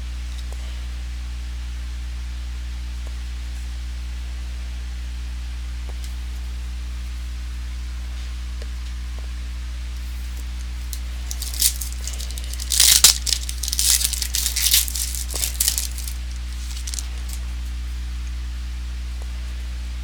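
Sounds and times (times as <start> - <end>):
wrapper crinkling and tearing: 10.1 - 17.4.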